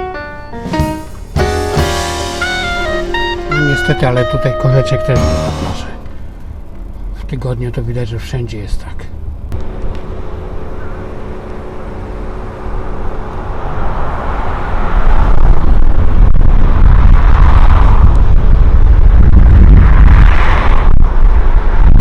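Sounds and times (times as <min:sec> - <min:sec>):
car road and engine noise: 0:09.2 - 0:22.0.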